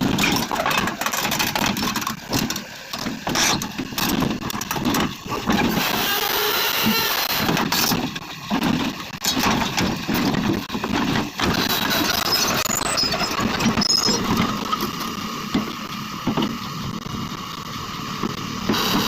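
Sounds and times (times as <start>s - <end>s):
excavator diesel engine running: 9.8s - 19.0s.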